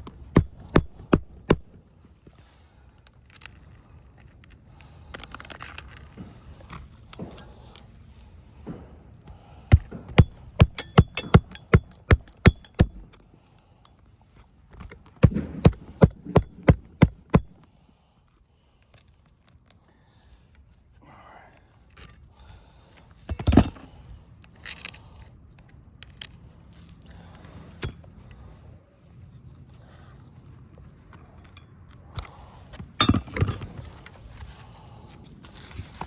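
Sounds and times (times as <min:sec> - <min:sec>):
hammer striking roofing nails: 0:00.0 - 0:01.8, 0:09.7 - 0:13.2, 0:15.2 - 0:17.6
scraping and handling shingles: 0:00.0 - 0:04.0, 0:09.6 - 0:13.2, 0:14.8 - 0:17.6, 0:32.2 - 0:36.0.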